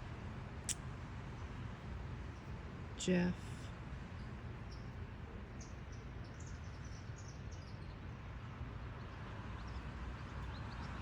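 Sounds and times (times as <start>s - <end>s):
small songbird chirping: 4.2s - 8.0s.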